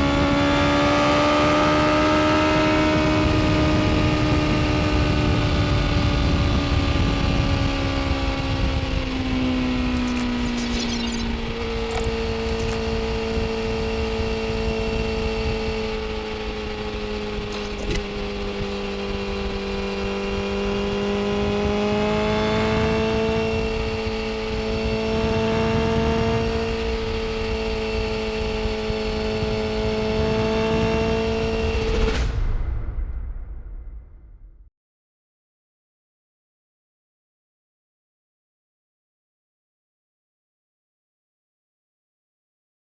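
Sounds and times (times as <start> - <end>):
motorcycle engine running: 0.0 - 32.1
wind rush: 3.2 - 20.6, 24.8 - 34.6.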